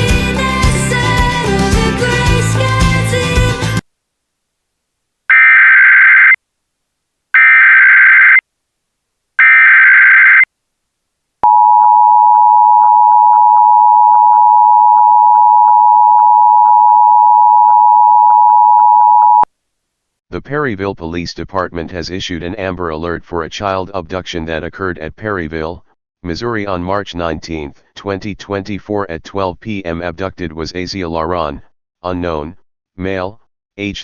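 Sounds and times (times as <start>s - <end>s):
two-tone attention signal: 11.4s - 19.4s.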